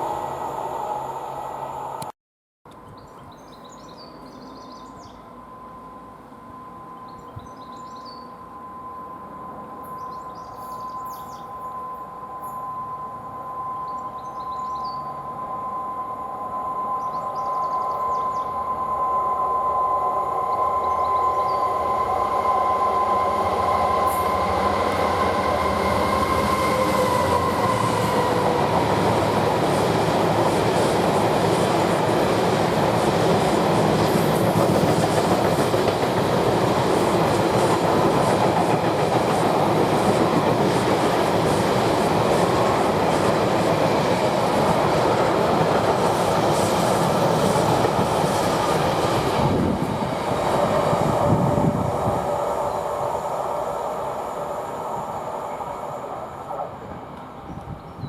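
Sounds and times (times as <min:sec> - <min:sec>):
train engine whine: 0:00.0 - 0:02.1, 0:03.9 - 0:58.0
wheels clattering on rails: 0:28.4 - 0:49.6.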